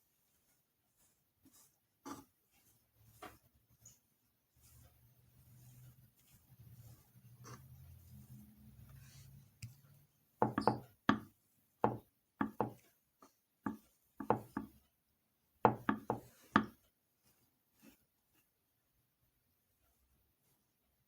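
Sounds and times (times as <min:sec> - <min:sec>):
sharp knocks on a hard surface: 0:10.4 - 0:12.8, 0:13.7 - 0:14.7, 0:15.7 - 0:16.8.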